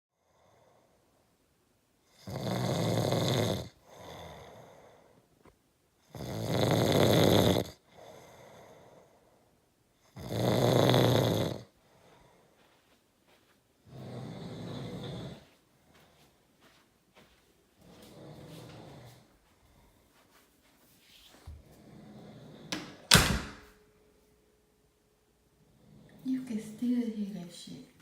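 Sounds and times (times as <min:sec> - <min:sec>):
person snoring deeply: 0:02.2 - 0:05.2, 0:06.1 - 0:09.0, 0:10.2 - 0:11.7, 0:13.9 - 0:15.5.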